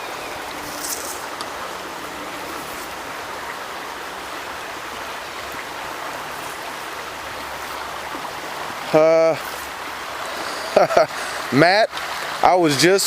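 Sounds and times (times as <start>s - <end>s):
high rustle: 0.0s - 4.2s, 6.1s - 7.9s, 9.0s - 9.8s
creek water running: 0.0s - 13.0s.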